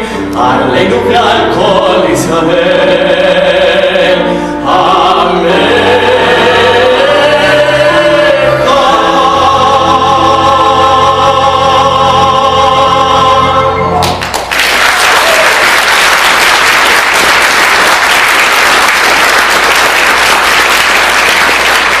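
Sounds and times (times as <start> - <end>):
cantor singing with instruments: 0.0 - 14.1
audience applause: 14.0 - 22.0.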